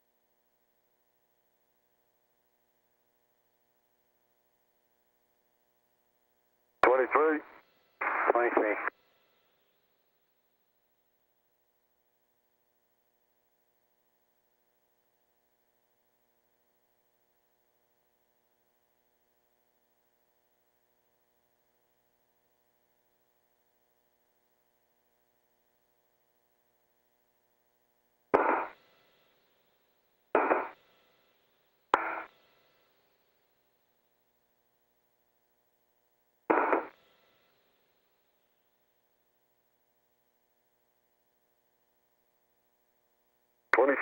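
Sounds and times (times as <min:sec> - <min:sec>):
radio transmission bursts: 0:06.8 - 0:08.9, 0:28.4 - 0:28.8, 0:30.4 - 0:30.8, 0:32.0 - 0:32.3, 0:36.5 - 0:36.9, 0:43.8 - 0:44.0
faint radio hum: 0:06.8 - 0:09.0, 0:30.4 - 0:30.8, 0:43.7 - 0:44.0.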